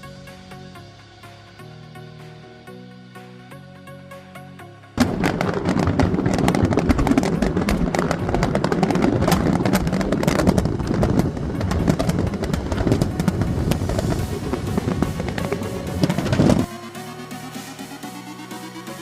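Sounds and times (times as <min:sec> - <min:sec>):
loud music with busy beat: 0:12.9 - 0:19.0.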